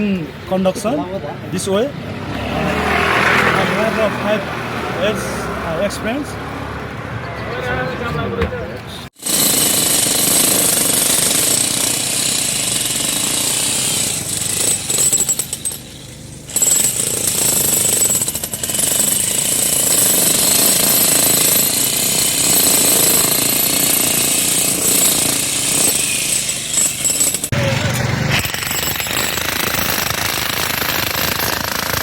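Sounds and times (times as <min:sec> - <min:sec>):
jackhammer hammering: 0:09.2 - 0:32.0.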